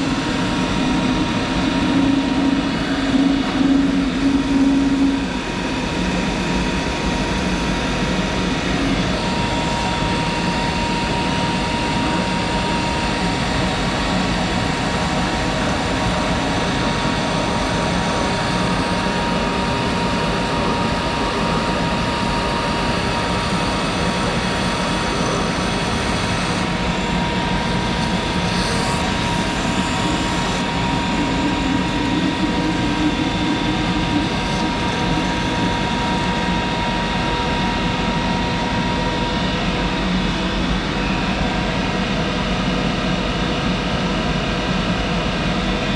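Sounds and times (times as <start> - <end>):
low machine hum: 0.0 - 44.1
high machine whine: 0.0 - 45.9
lathe running: 12.7 - 37.0.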